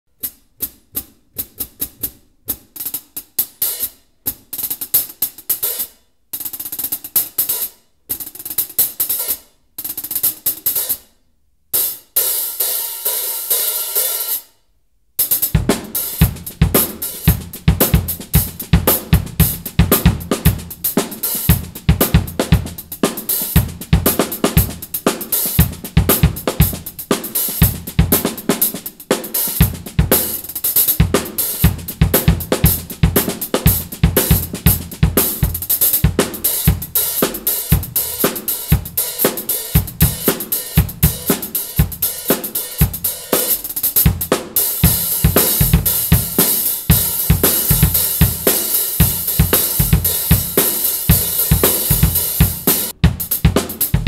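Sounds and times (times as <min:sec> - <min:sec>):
hi-hats played with sticks: 0:00.1 - 0:14.6, 0:15.2 - 0:54.0
snare drum: 0:15.2 - 0:54.0
kick drum: 0:44.1 - 0:54.0.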